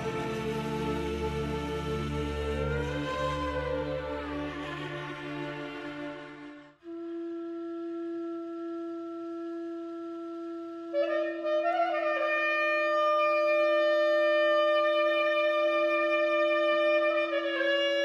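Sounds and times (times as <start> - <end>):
sustained wind instrument note: 6.8 - 18.0.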